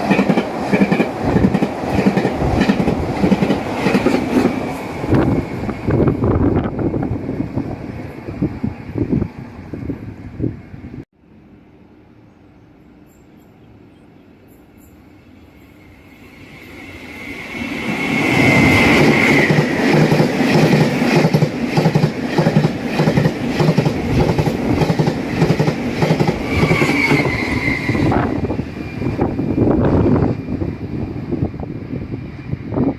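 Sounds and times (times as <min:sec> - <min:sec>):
train wheels clattering on rails: 0:00.0 - 0:05.8, 0:18.0 - 0:28.3
high wheel squeal: 0:26.4 - 0:29.5.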